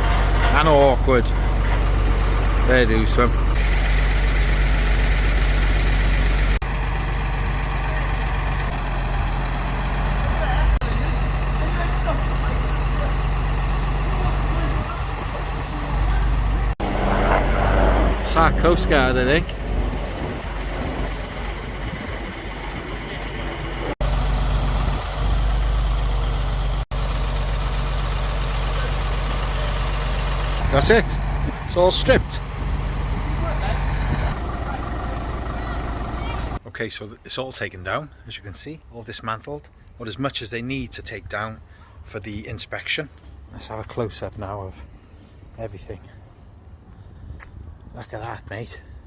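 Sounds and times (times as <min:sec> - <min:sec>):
heavy engine idling: 0:00.0 - 0:17.0, 0:19.3 - 0:36.6.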